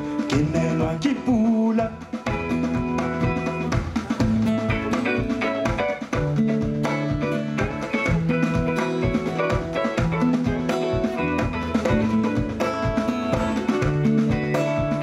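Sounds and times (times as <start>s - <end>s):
live band playing: 0.0s - 15.0s
steady drum beat: 0.0s - 15.0s.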